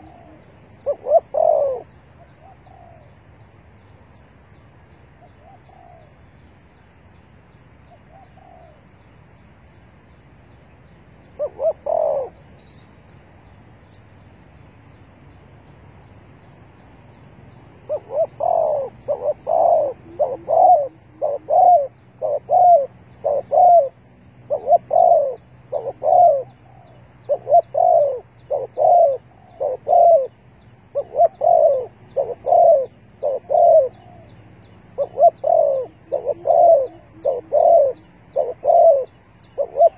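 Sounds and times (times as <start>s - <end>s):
dove cooing: 0.0s - 3.1s, 5.3s - 6.1s, 8.1s - 8.8s, 11.4s - 12.4s, 17.9s - 34.4s, 35.0s - 39.9s.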